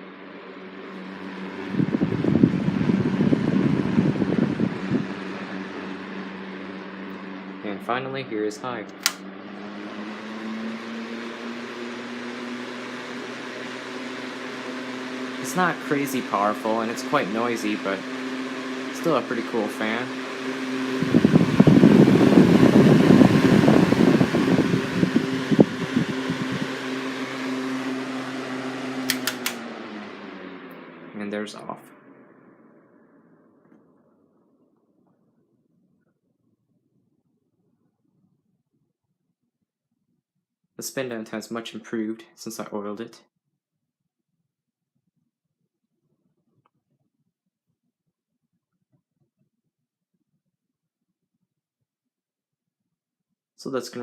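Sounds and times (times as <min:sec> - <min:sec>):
fan motor humming: 0:00.0 - 0:34.6
air buffeting microphone: 0:01.4 - 0:05.5, 0:20.9 - 0:26.7.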